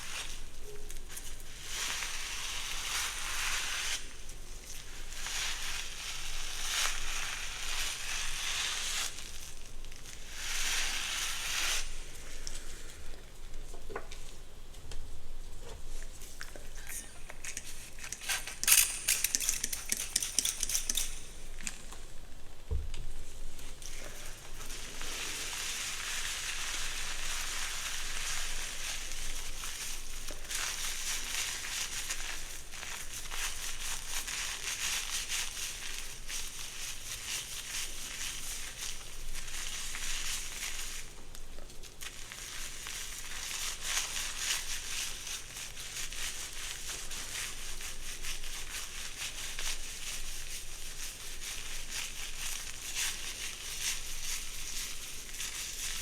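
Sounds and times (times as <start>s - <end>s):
hair rustling: 15.7s - 22.4s, 23.2s - 41.2s, 42.8s - 56.0s.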